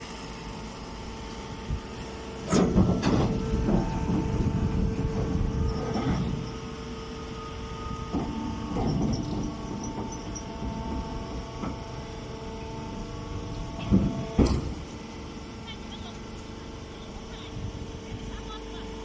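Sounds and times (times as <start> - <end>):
baling machine motor hum: 0.0 - 19.0
rough mechanical clatter: 2.4 - 6.8.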